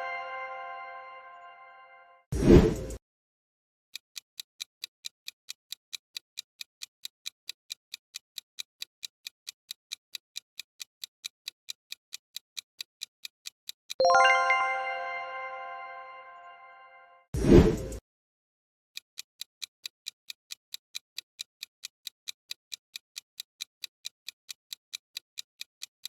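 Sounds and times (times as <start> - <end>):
bright chime: 0.0 - 2.0, 14.0 - 17.2
timer ticking: 4.4 - 16.6, 19.2 - 26.0.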